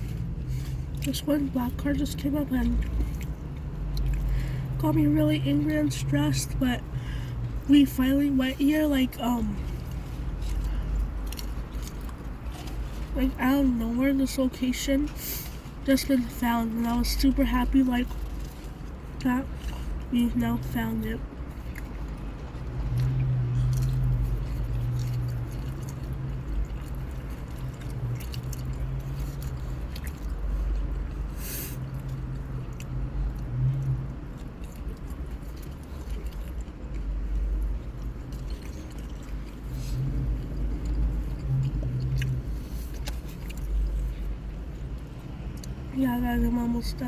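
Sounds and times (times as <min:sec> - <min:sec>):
person chewing food: 0:02.7 - 0:04.8, 0:09.6 - 0:13.1, 0:21.3 - 0:45.9.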